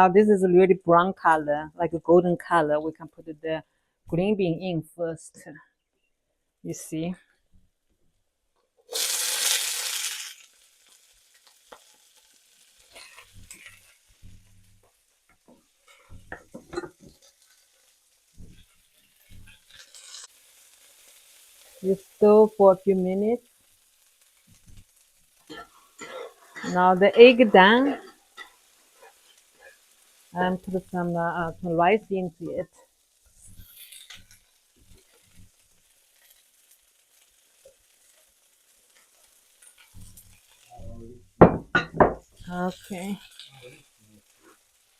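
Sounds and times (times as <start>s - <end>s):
food sizzling in oil: 8.8s - 44.9s
spatula scraping pan: 25.6s - 29.9s
spatula knocking on pan: 41.4s - 42.2s.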